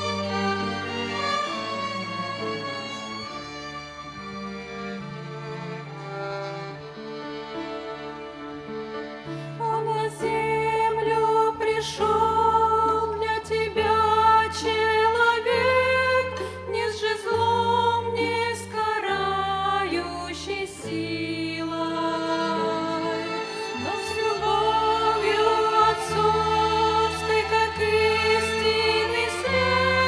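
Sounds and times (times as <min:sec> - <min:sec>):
violin ensemble: 0:00.0 - 0:30.0
women singing a hymn: 0:09.6 - 0:30.0.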